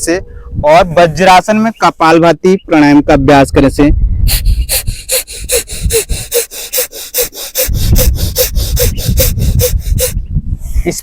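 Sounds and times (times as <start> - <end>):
forceful exhalations through nose: 4.3 - 10.8.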